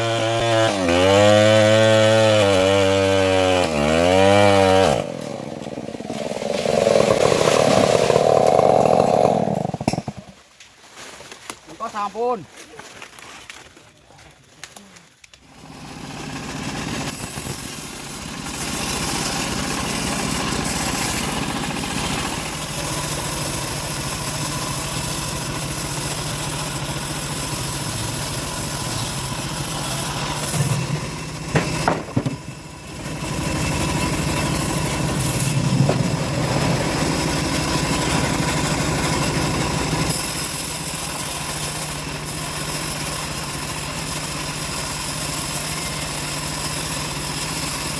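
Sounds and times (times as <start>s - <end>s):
sawmill engine running: 0.0s - 10.4s, 15.4s - 47.9s
sharp knocks: 9.8s - 10.3s, 31.5s - 32.5s.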